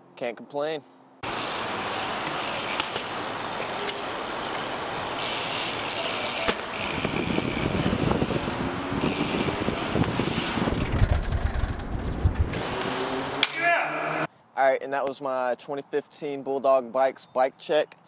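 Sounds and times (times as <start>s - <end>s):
bike tyres rolling on hard ground: 1.5s - 13.0s
bike parts rattling: 1.8s - 12.8s
heavy uneven rumble: 10.6s - 12.6s.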